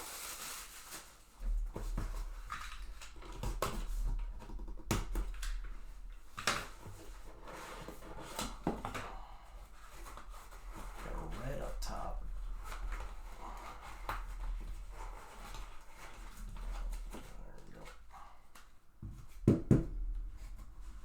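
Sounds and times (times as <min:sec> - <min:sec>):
wrapper rustling: 0:00.0 - 0:03.3.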